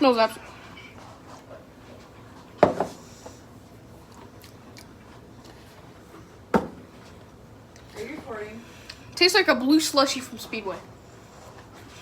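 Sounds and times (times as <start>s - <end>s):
cup knocking: 2.6s - 3.0s, 6.5s - 6.8s.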